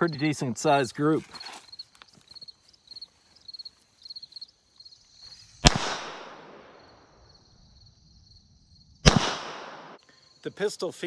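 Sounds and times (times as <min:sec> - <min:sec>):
insects chirping: 0:00.0 - 0:09.1, 0:09.8 - 0:11.0
pistol shot with echo: 0:05.6 - 0:06.8, 0:09.0 - 0:10.0.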